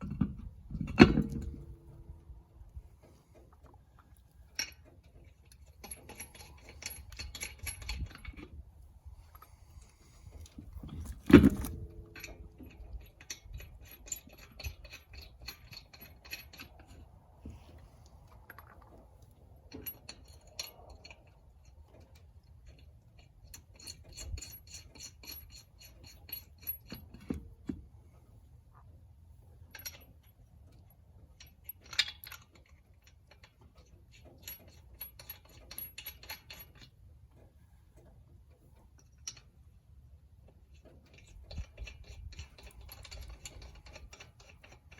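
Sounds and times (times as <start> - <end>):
lug nuts clicking metallically: 4.5 - 8.6, 9.2 - 17.6, 19.6 - 27.6, 29.7 - 37.1, 38.6 - 44.9.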